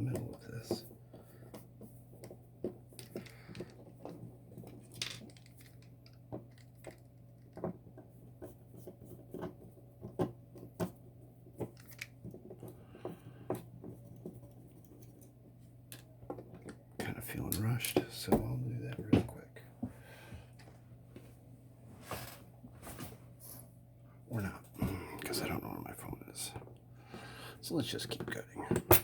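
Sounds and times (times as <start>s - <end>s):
steady low hum: 17.0s - 29.0s.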